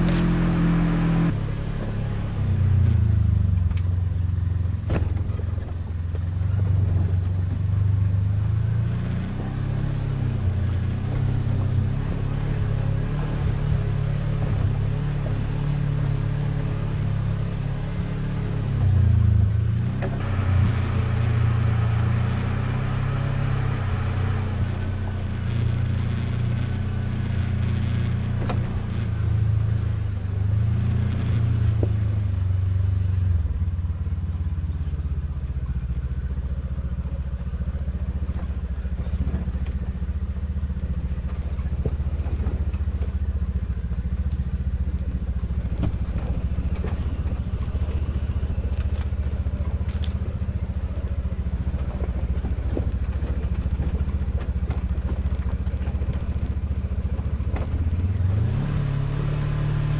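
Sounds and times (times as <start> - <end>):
vehicle engine running: 0.0 - 59.9
light knocks and clatter: 3.5 - 8.2, 37.0 - 58.8.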